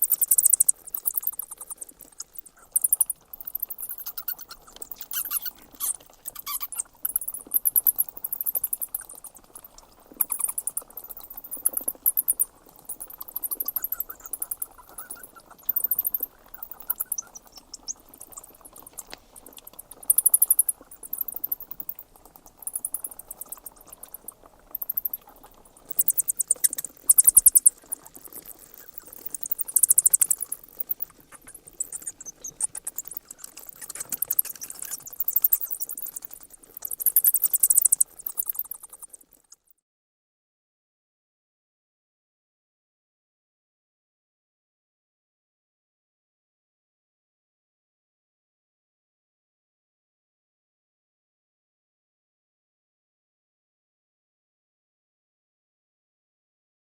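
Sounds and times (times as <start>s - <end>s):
bats squeaking and chittering: 0.0s - 39.6s.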